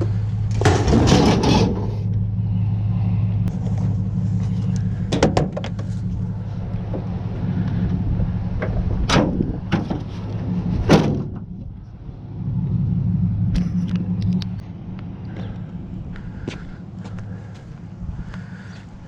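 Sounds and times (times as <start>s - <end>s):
low mechanical hum: 0.0s - 19.0s
sharp knocks and clanks: 0.5s - 1.9s, 5.1s - 5.9s.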